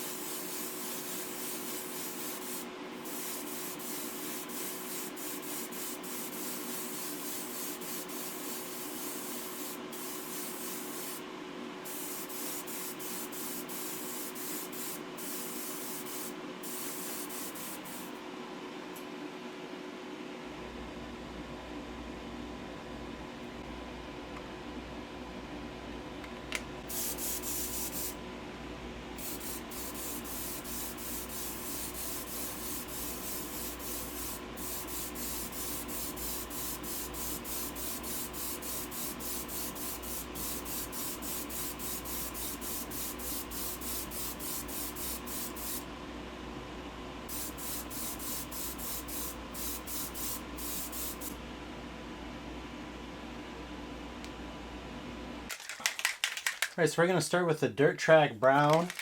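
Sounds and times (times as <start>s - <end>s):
airbrush spray hissing: 0.0s - 11.2s, 11.9s - 18.2s, 26.9s - 28.2s, 29.2s - 45.8s, 47.3s - 51.4s
steady hum: 20.4s - 55.5s.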